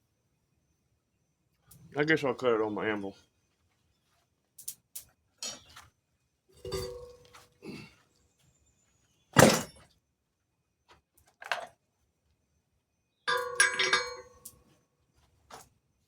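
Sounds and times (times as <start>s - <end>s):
hammer striking steel on anvil: 13.3s - 14.3s
anvil ringing: 13.3s - 14.4s.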